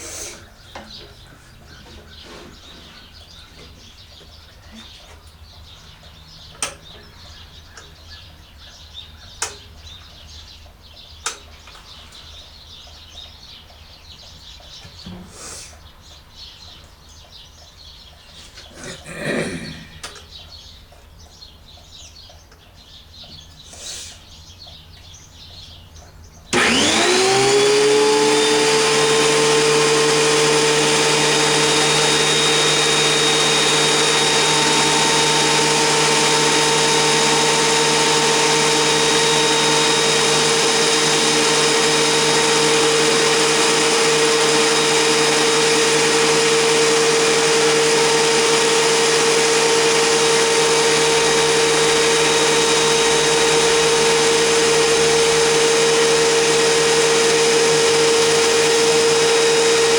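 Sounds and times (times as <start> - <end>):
thickness planer motor whining: 26.5 - 59.9.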